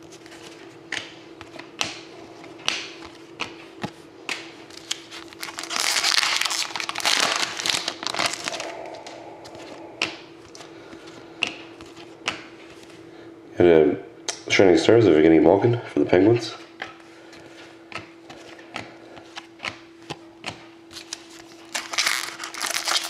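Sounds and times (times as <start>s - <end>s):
steady low hum: 0.0s - 23.0s
foil wrapper crinkling: 4.7s - 8.8s, 21.0s - 23.0s.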